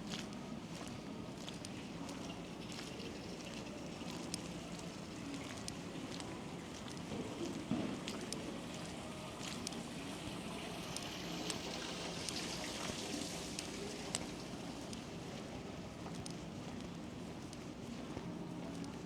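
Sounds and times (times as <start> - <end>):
light ticks: 9.5 - 9.8, 16.0 - 17.7.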